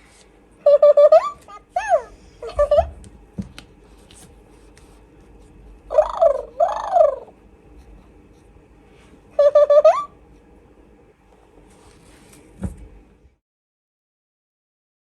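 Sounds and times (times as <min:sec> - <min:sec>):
toy squeaky calls: 0:00.7 - 0:02.9, 0:05.9 - 0:07.3, 0:09.4 - 0:10.1
toy buzzy call: 0:05.9 - 0:07.3, 0:09.4 - 0:10.2.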